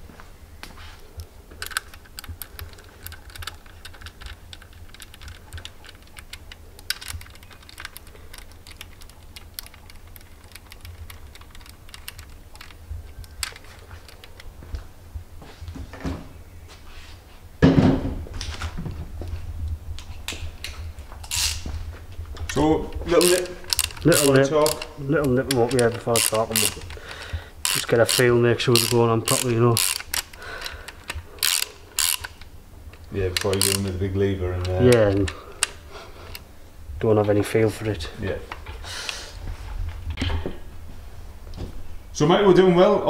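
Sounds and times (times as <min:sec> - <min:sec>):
steady low hum: 0:00.0 - 0:43.0
metal parts clicking and clinking: 0:01.6 - 0:14.5, 0:21.2 - 0:21.6, 0:22.4 - 0:34.0
metal parts clattering: 0:23.1 - 0:32.4.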